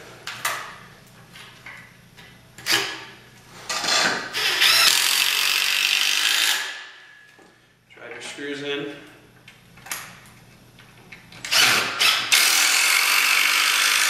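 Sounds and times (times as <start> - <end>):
power drill driving screw: 3.8 - 6.8, 11.4 - 14.0.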